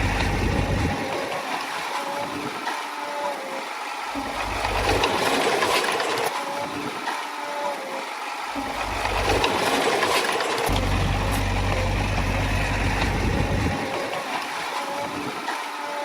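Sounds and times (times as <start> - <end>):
bulldozer diesel engine running: 0.0 - 1.4, 4.1 - 6.3, 8.6 - 14.5.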